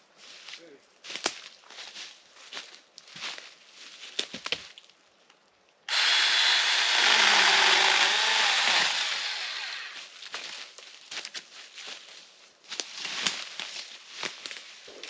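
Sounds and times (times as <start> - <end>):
steps in brush: 0.1 - 5.0, 10.0 - 15.0
power saw cutting wood: 5.9 - 10.0.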